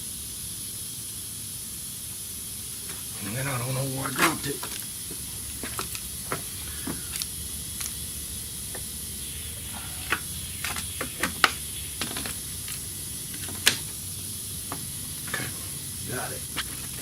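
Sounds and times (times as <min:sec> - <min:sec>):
steady hiss: 0:00.0 - 0:17.0
small parts clicking and tapping: 0:04.2 - 0:08.9.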